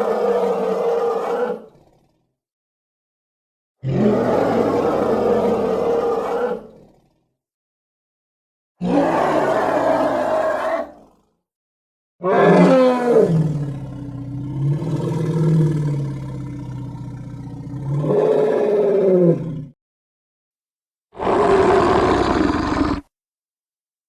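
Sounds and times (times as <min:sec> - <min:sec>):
dinosaur roar: 0:00.0 - 0:02.2, 0:03.8 - 0:07.2, 0:08.8 - 0:11.2, 0:12.2 - 0:19.8, 0:21.2 - 0:23.1.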